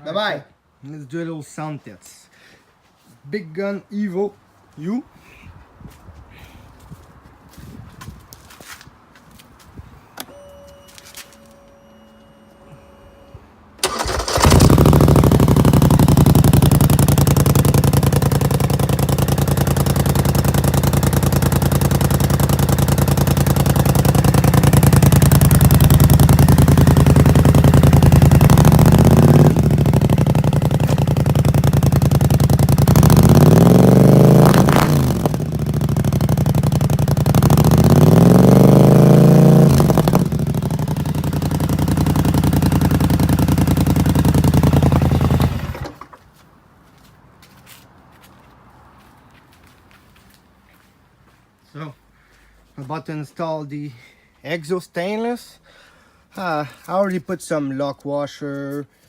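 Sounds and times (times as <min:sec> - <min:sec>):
atv engine idling and revving: 0:13.8 - 0:46.2.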